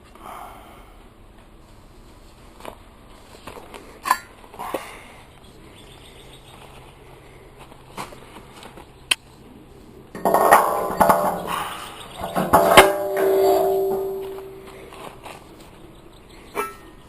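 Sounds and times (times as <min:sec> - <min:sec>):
short clinks and knocks: 0:10.2 - 0:14.8.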